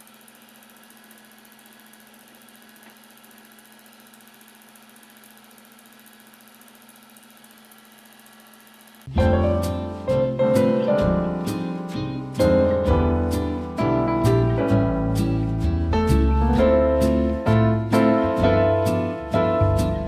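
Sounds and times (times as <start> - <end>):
loud piano music: 9.1 - 20.0.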